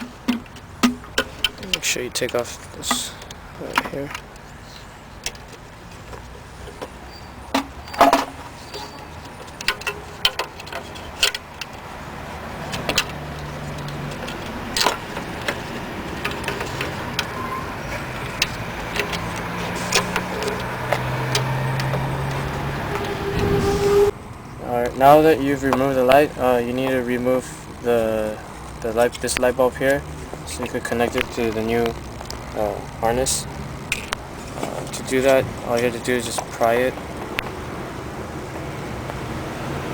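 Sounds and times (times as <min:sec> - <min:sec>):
plastic clicks and knocks: 0:00.0 - 0:04.3, 0:12.7 - 0:17.4.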